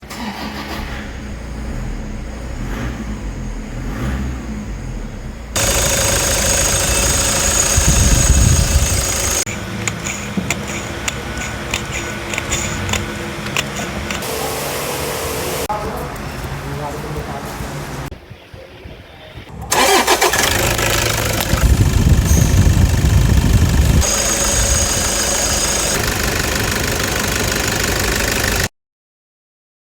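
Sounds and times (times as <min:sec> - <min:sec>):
car engine idling with growl: 0:00.8 - 0:14.2, 0:19.7 - 0:28.7.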